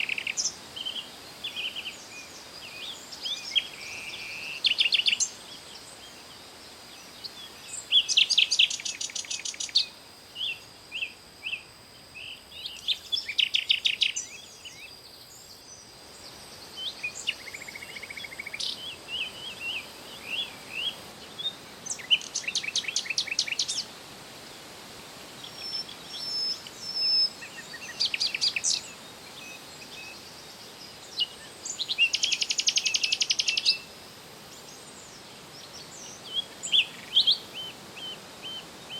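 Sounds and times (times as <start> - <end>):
songbirds trilling: 0.0 - 23.9, 25.4 - 38.9
faint high hiss: 0.0 - 38.9
bird chirps: 7.0 - 15.9, 30.9 - 33.9.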